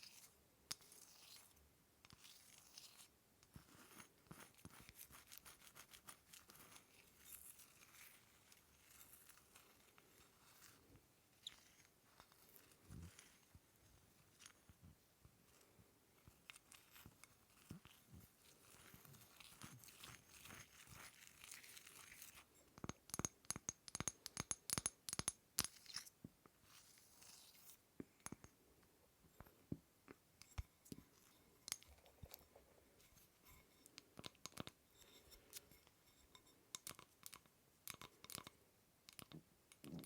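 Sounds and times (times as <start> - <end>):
soft scratching and rustling: 2.2 - 22.5.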